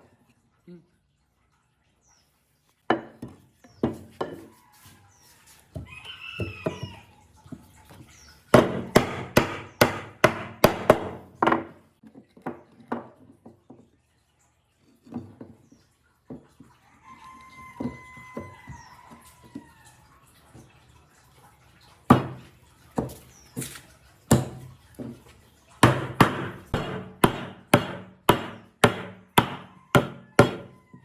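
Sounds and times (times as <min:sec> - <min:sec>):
hard strikes on wood: 0:08.6 - 0:11.7, 0:25.8 - 0:30.7.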